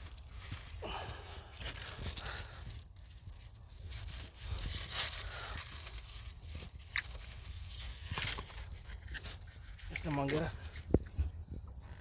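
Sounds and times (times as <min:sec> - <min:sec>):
rustling and scraping handling noise: 0:00.0 - 0:12.0.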